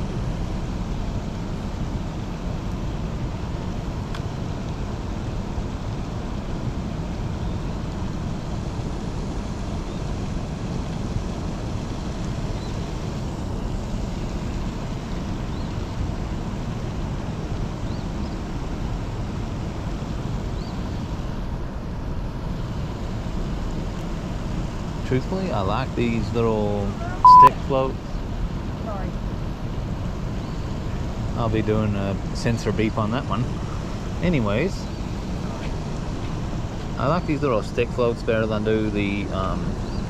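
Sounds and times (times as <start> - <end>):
faint high chirps: 27.2 - 27.6.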